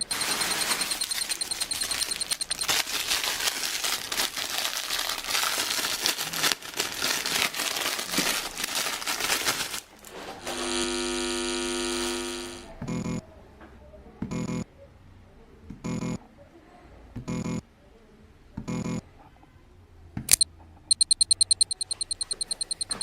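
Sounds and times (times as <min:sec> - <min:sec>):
plastic packaging crinkling: 0:00.0 - 0:10.5
buzzy electronic tone: 0:10.4 - 0:13.1.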